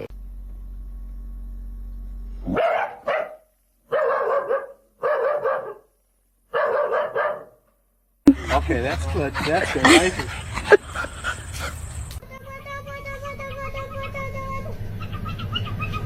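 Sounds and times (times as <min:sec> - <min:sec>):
low steady hum: 0:00.0 - 0:02.6
dog barking: 0:02.5 - 0:05.9, 0:06.5 - 0:07.6.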